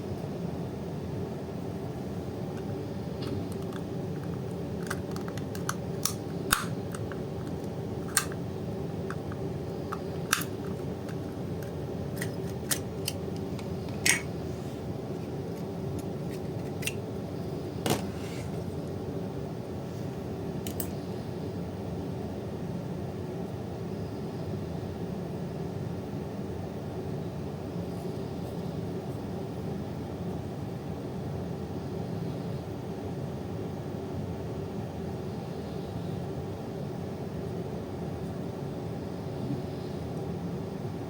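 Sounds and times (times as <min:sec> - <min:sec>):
steady low hum: 0:00.0 - 0:41.0
tools clicking on plastic casing: 0:03.2 - 0:08.4.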